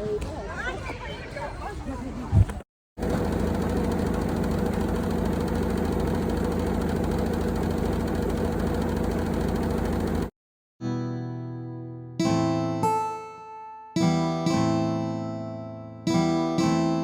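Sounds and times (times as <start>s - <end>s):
engine idling: 3.0s - 10.3s.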